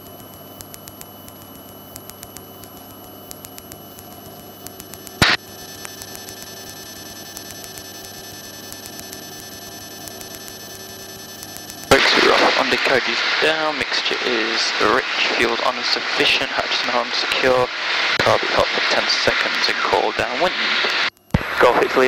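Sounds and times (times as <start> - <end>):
small regular ticks: 0.0 - 11.9
aircraft engine drone: 11.8 - 22.0
sharp burst of noise: 11.8 - 22.0.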